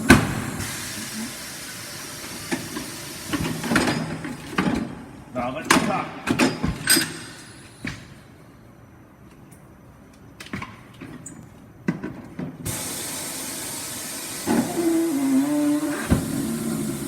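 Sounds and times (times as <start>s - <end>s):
compressed air hissing: 0.0s - 3.8s, 12.7s - 17.0s
pitched squeal: 14.4s - 16.9s.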